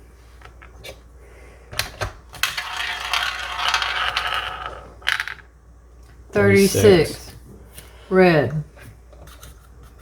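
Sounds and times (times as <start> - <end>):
ball rattling around roulette wheel: 2.3 - 5.5.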